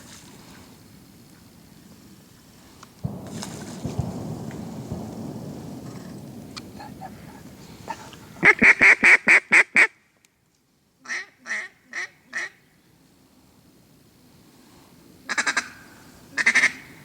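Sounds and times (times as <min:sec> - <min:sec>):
duck quacking: 0:16.4 - 0:16.9.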